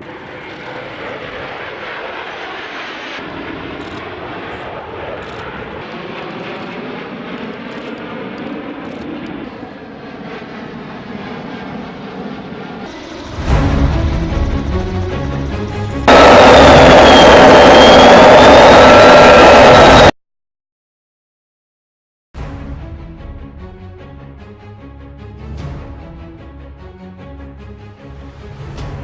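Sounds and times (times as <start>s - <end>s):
jet engine roar: 0.0s - 20.2s.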